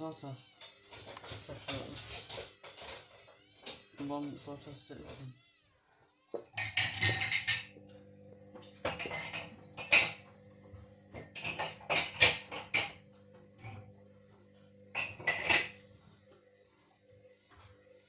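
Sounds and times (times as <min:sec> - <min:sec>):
washing machine motor hum: 0:06.5 - 0:18.0.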